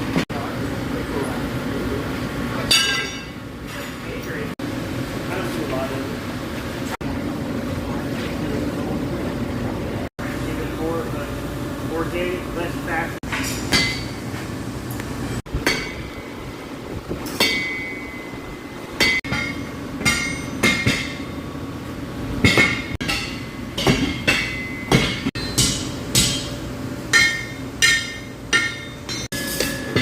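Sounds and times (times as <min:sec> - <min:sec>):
hammer striking steel on anvil: 0:02.6 - 0:03.4, 0:13.2 - 0:14.2, 0:15.6 - 0:16.3, 0:17.3 - 0:18.4, 0:19.0 - 0:21.4, 0:22.4 - 0:30.0.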